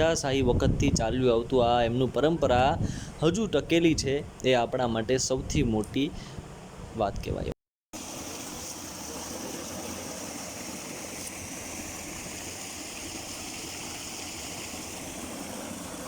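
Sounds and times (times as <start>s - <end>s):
stream rushing water: 8.0s - 16.0s.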